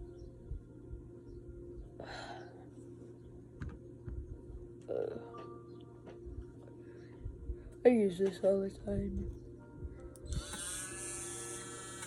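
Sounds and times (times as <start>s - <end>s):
electric tool motor whine: 10.3s - 12.0s.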